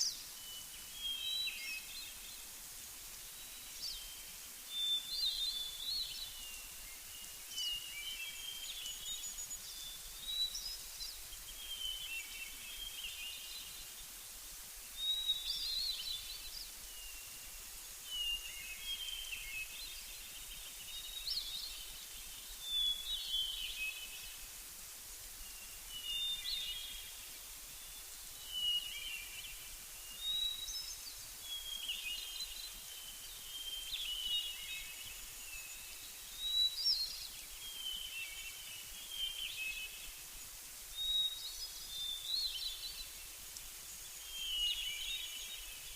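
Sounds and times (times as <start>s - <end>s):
steady background hiss: 0.0s - 45.9s.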